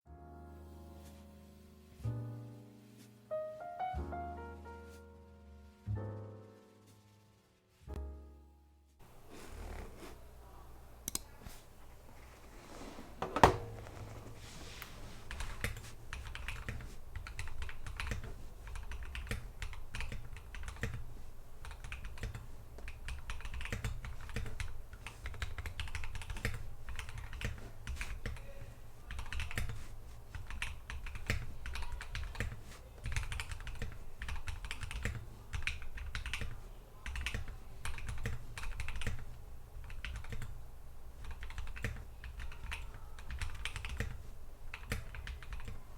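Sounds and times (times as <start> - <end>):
mechanical keyboard typing: 15.3 - 40.6, 41.2 - 45.8.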